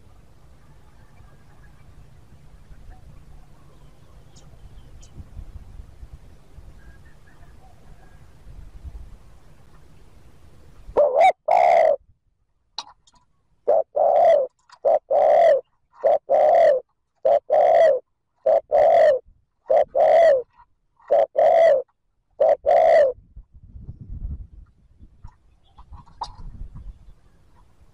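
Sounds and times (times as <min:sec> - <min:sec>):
dove cooing: 0:10.9 - 0:12.0, 0:13.6 - 0:23.2.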